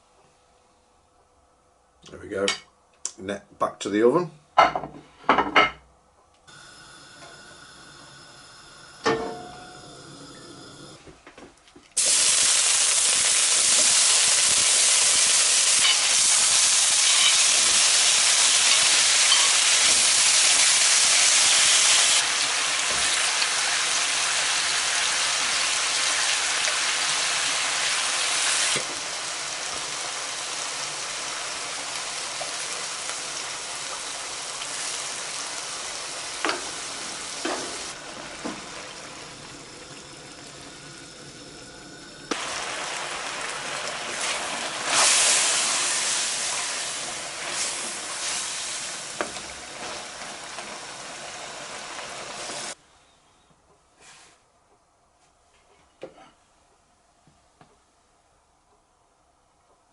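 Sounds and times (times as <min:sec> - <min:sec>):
seafood sizzling in a hot pan: 0:06.5 - 0:10.8, 0:12.0 - 0:52.8.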